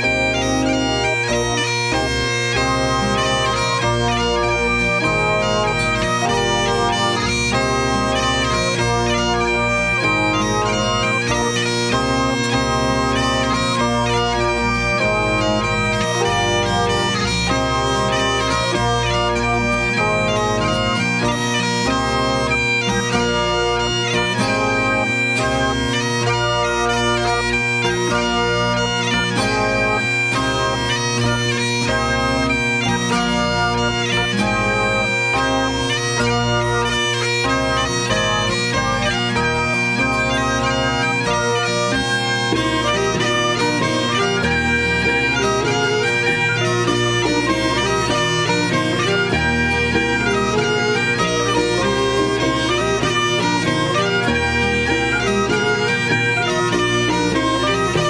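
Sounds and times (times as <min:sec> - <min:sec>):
accordion: 0:00.0 - 0:58.0
bagpipes playing quick melody: 0:00.0 - 0:58.0.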